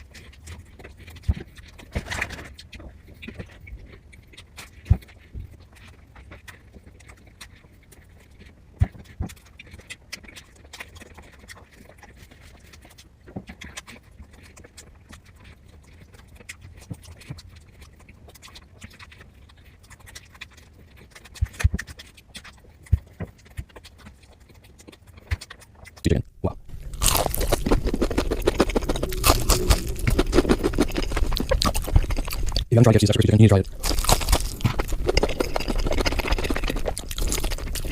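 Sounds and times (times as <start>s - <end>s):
chewing clicks and smacks: 3.2s - 37.9s
low steady hum: 26.1s - 37.9s.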